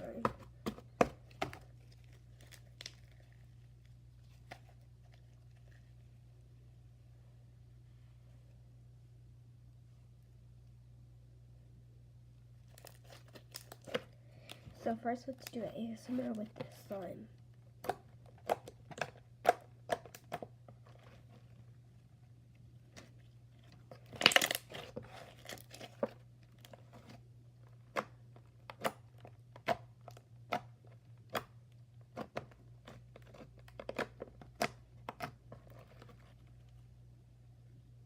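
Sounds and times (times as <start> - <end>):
slime squishing and popping: 12.7 - 14.1, 22.9 - 26.8, 27.8 - 35.5.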